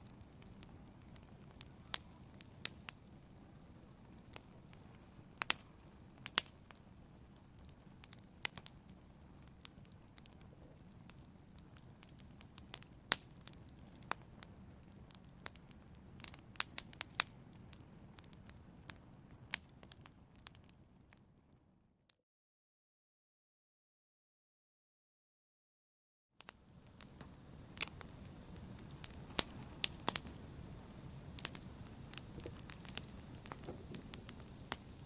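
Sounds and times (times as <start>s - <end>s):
logs crackling and popping: 0.0s - 21.2s, 26.4s - 35.0s
low rush of flame: 26.6s - 35.0s.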